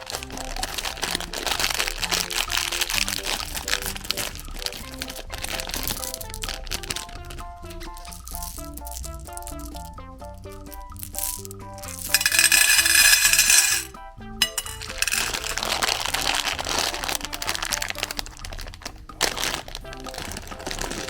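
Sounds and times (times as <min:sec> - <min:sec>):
meat grinder crunching hard candy: 0:00.0 - 0:07.0, 0:15.3 - 0:21.0
background music: 0:00.0 - 0:21.0.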